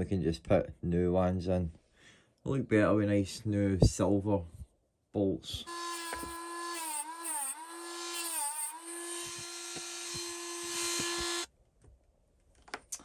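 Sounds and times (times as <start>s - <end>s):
rotary tool cutting disc on metal: 5.7s - 11.5s.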